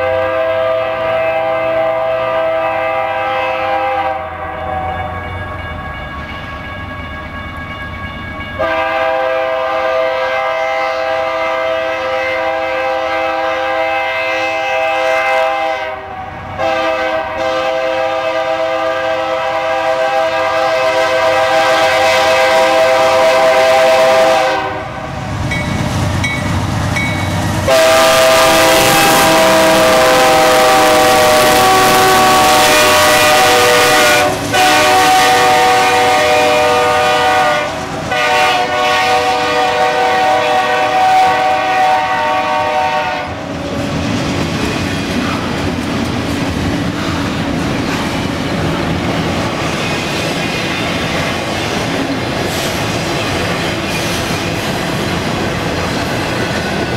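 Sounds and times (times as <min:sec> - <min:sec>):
locomotive air horn blasts: 0:00.0 - 0:05.0, 0:08.6 - 0:25.1, 0:27.6 - 0:43.4
train passing close: 0:00.0 - 0:56.9.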